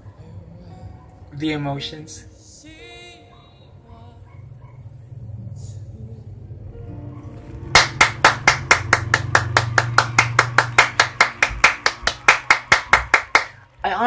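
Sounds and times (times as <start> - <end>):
person clapping: 7.8 - 13.6.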